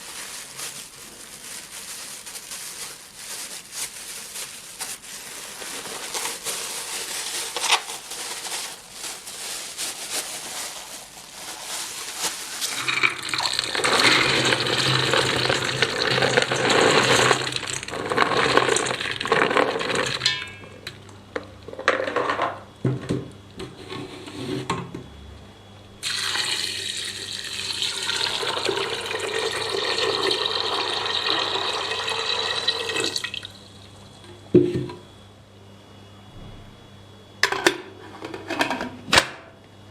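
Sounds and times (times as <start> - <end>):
tap water running into sink: 26.0 - 33.5.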